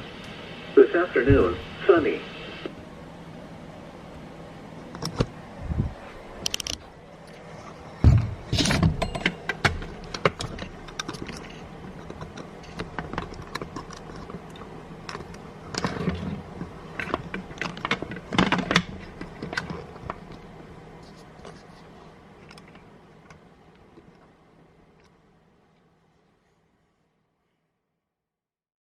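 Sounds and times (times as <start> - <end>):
handling clicks and rustles: 6.2 - 25.2
heavy thump: 8.0 - 9.9.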